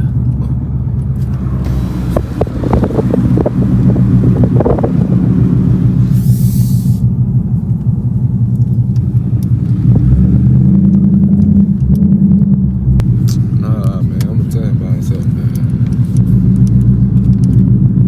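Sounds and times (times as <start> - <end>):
car engine rumbling while driving: 0.0 - 18.0.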